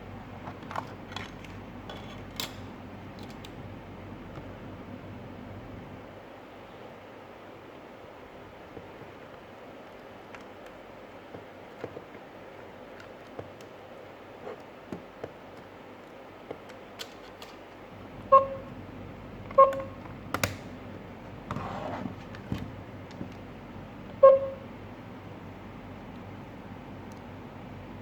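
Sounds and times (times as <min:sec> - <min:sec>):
low electronic beeps: 0:24.2 - 0:24.6.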